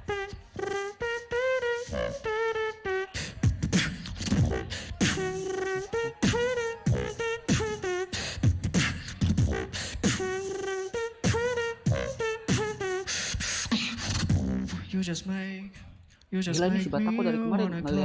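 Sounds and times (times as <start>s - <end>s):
beatboxing kick and snare: 0.0s - 2.4s, 3.0s - 14.9s
person humming melody: 0.0s - 13.2s.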